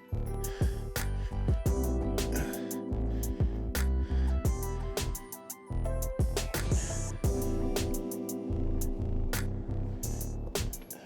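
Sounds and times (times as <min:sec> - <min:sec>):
music with bass and drums: 0:00.2 - 0:11.0.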